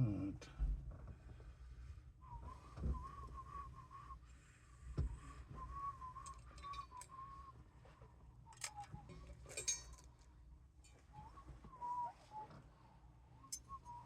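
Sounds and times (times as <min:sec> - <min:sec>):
person whistling softly: 0:02.2 - 0:09.7, 0:10.9 - 0:14.0.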